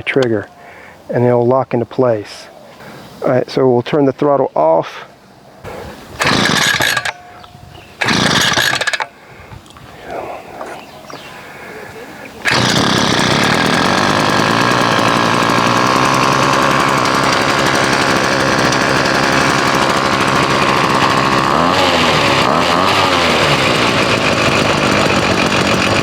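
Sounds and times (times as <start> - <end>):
chainsaw engine running: 6.2 - 7.4, 8.0 - 9.2, 12.4 - 26.0.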